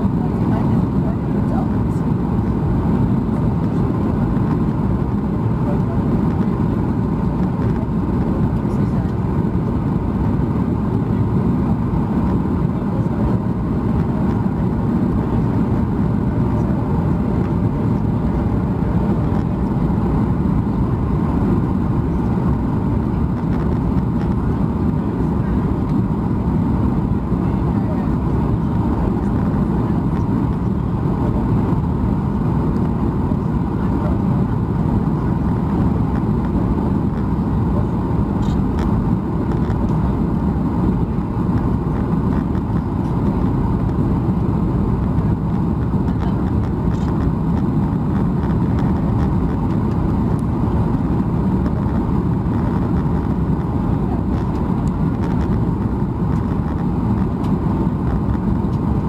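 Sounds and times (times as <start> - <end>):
airflow over cabin: 0.0 - 59.0
airliner engine rumble: 0.0 - 59.0.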